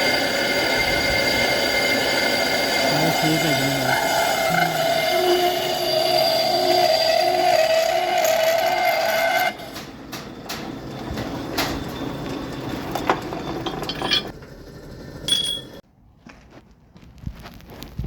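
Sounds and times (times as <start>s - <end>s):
metal clinks at a lathe: 8.2s - 14.4s, 15.3s - 15.8s.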